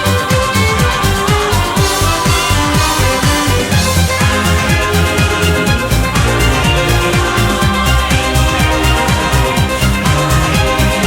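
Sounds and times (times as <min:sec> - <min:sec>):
electronic beat with bass drum: 0:00.0 - 0:11.0
sustained synth tones: 0:00.0 - 0:11.0.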